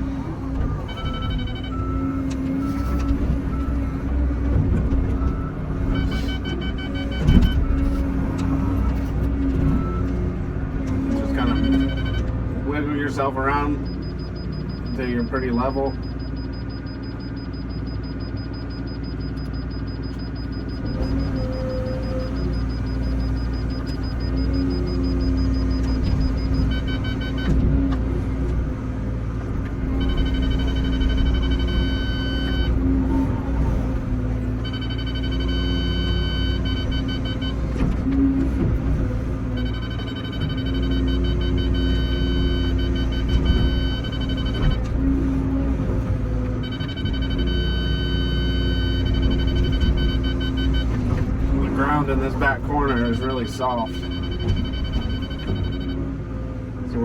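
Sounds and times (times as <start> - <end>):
diesel engine rumbling: 0.0 - 57.0
electronic beeping: 0.9 - 3.6, 11.3 - 12.2, 30.0 - 32.7, 34.6 - 37.5, 39.6 - 44.8, 46.6 - 50.9, 51.7 - 56.0.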